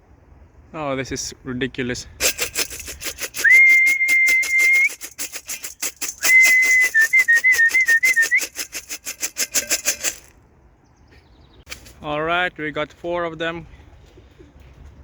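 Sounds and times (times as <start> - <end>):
fast even rattle: 2.2 - 10.4, 11.7 - 12.0
person whistling a wavering trill: 3.4 - 5.3, 6.2 - 8.7.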